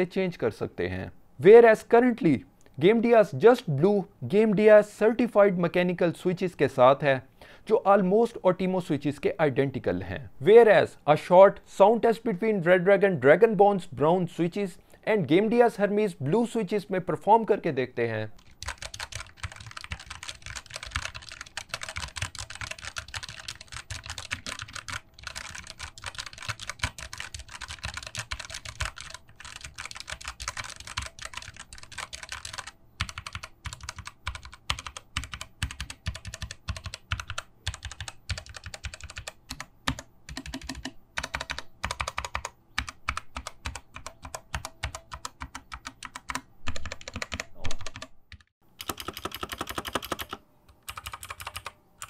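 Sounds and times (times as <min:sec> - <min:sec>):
mechanical keyboard typing: 0:18.4 - 0:51.8.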